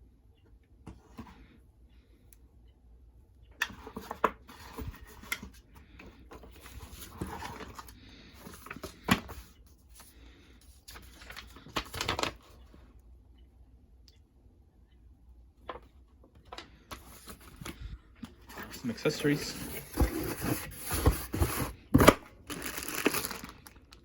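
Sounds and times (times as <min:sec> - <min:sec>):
packaging rustling: 0:10.9 - 0:12.7, 0:16.6 - 0:24.0.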